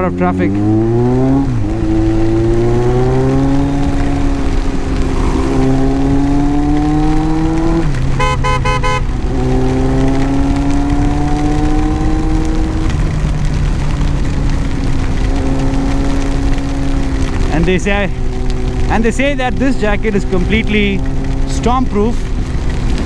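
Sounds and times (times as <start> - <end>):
motorcycle engine accelerating: 0.0 - 23.0
wind and road noise: 0.0 - 23.0
horn beeps: 8.2 - 9.1.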